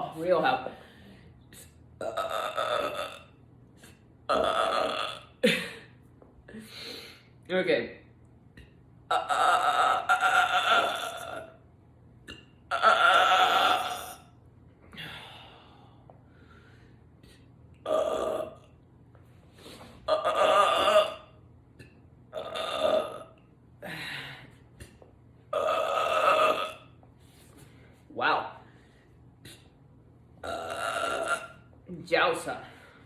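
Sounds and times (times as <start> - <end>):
woman belching: 2.0 - 3.4, 4.3 - 5.6, 9.1 - 11.6, 12.3 - 14.2, 17.8 - 18.6, 20.1 - 21.3, 22.3 - 23.4, 25.5 - 26.9, 30.4 - 31.6.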